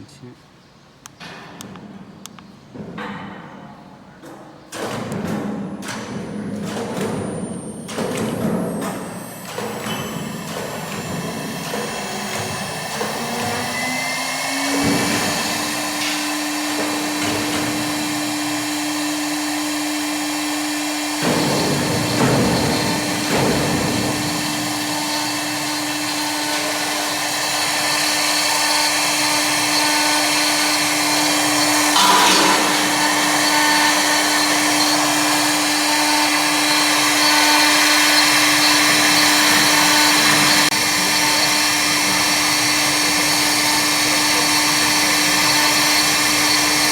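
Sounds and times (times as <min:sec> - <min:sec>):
lathe motor humming: 0:09.0 - 0:46.9.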